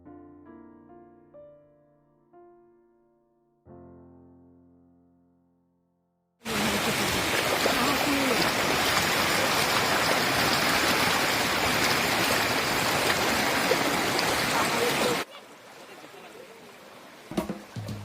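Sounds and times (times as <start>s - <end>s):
waterfall rushing water: 6.5s - 18.0s.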